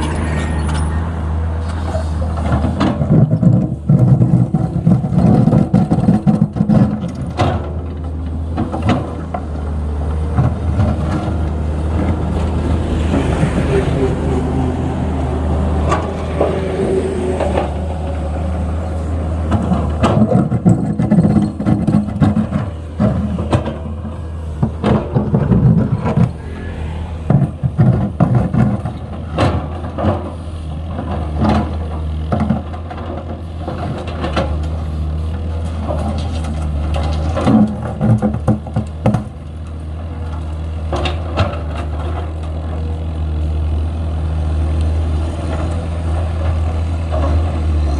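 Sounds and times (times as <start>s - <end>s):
excavator diesel engine running: 0.0s - 47.9s.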